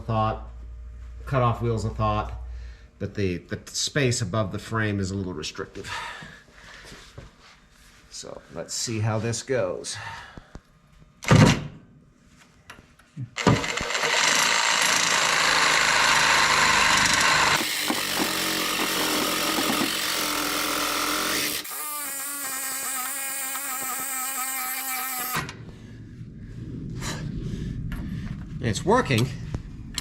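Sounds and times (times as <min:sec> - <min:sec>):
reciprocating saw cutting steel: 0:13.6 - 0:25.5.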